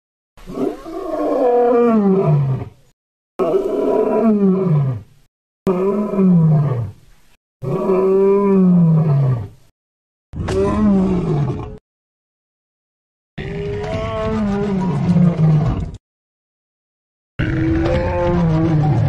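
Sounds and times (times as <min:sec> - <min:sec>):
creature roars sliding down in pitch: 0:17.4 - 0:19.0.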